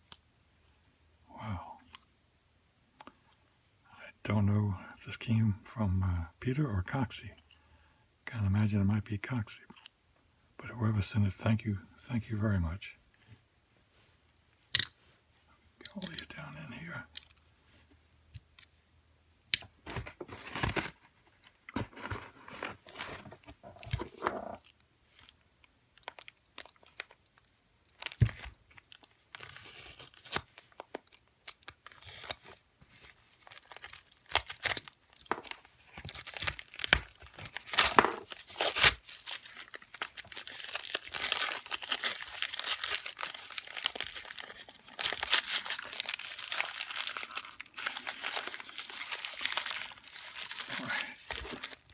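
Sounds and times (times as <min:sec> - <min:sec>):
packaging tearing and crumpling: 0:19.9 - 0:21.1, 0:21.8 - 0:24.7, 0:28.0 - 0:51.9.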